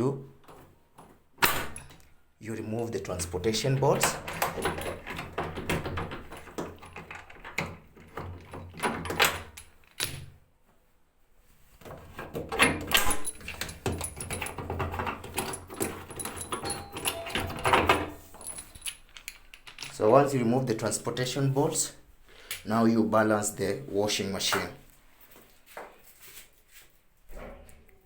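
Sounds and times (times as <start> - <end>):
metal bolts clicking and rattling: 0.4 - 2.2, 3.2 - 10.3, 12.0 - 21.0.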